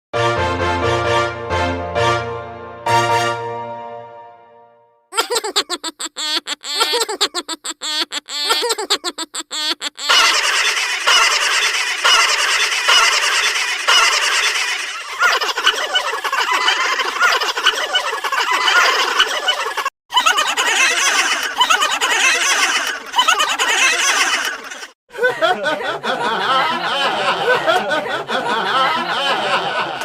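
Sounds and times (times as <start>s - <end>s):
fowl gobbling calls: 6.0s - 15.8s.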